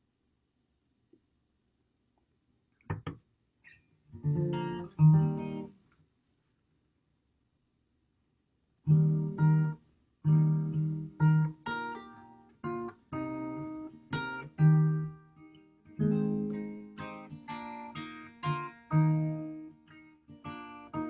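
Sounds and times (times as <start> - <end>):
acoustic guitar chords: 4.2 - 5.8, 8.9 - 21.0.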